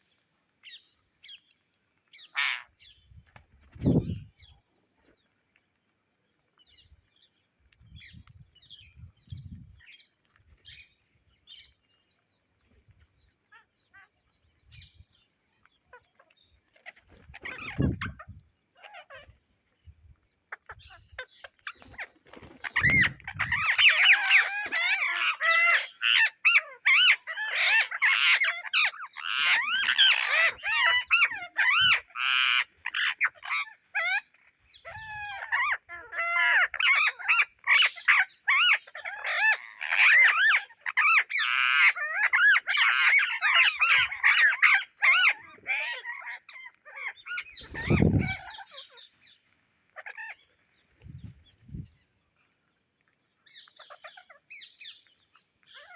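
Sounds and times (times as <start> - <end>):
parrots squawking and chirping: 2.0 - 3.0, 13.4 - 19.8, 20.5 - 55.9.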